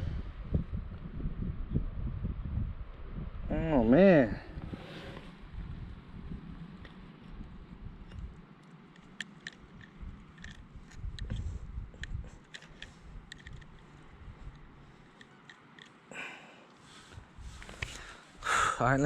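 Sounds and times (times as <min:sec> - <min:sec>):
wind rumble on microphone: 0:00.0 - 0:15.0, 0:17.1 - 0:19.0
small clicks and crunches: 0:08.1 - 0:16.0.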